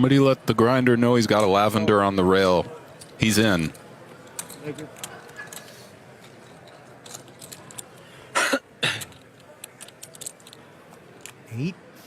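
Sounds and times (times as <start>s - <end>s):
person coughing: 8.3s - 9.1s.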